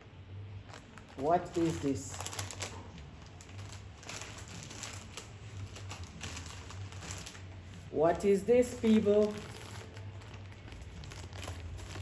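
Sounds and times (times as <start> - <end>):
plastic packaging rustling: 0.5 - 12.0.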